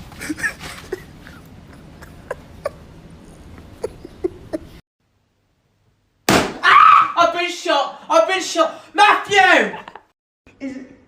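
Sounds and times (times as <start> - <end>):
high-pitched yelps: 6.6 - 7.2.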